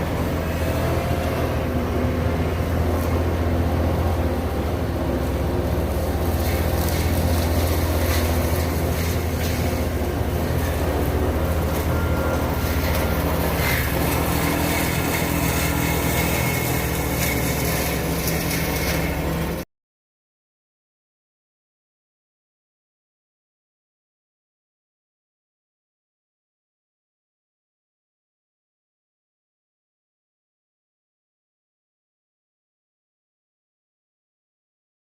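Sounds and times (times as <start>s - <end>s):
diesel machinery engine drone: 0.0s - 19.6s.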